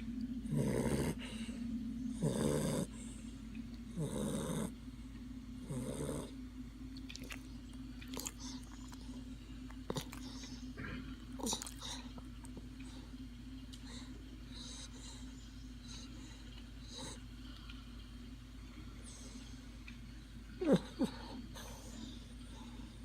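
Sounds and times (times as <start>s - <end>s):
dog snoring: 0.0s - 3.2s, 3.9s - 4.8s, 5.6s - 6.4s, 8.1s - 9.2s, 9.8s - 12.5s, 20.6s - 22.7s
steady low hum: 0.0s - 23.0s.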